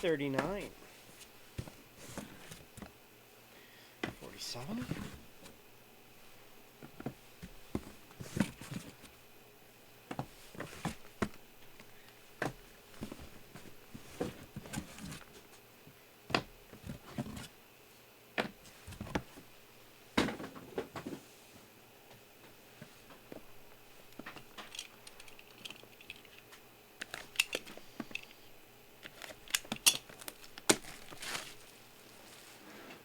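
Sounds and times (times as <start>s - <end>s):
hands handling card boxes: 0.0s - 3.0s, 6.2s - 9.2s, 10.0s - 15.7s, 16.3s - 17.6s, 18.4s - 19.5s, 22.5s - 32.6s.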